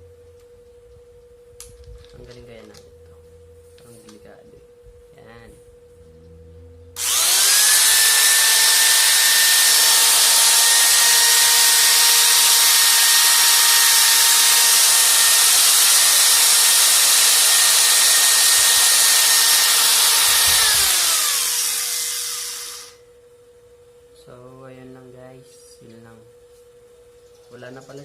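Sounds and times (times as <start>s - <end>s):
angle grinder motor whine: 7.0s - 23.0s.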